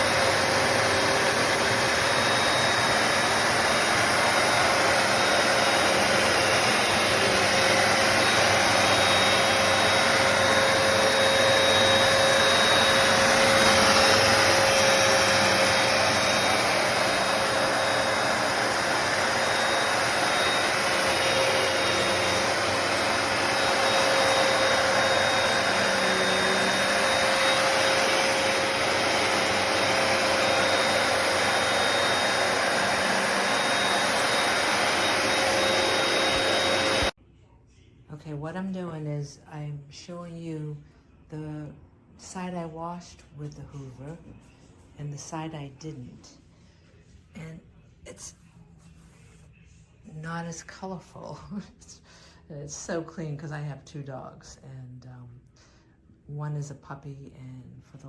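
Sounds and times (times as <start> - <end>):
carpet cleaner motor running: 0.0 - 37.2.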